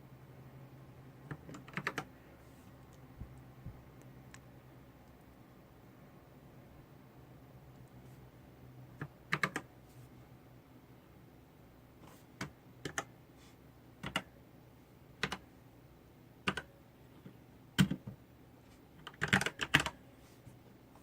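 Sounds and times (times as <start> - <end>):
mechanical keyboard key presses: 19.0 - 19.9.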